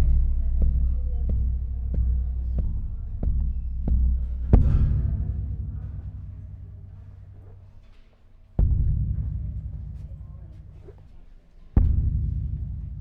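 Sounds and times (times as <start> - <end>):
low rumble: 0.0 - 7.7, 8.6 - 11.1
heavy thumps: 0.0 - 13.0.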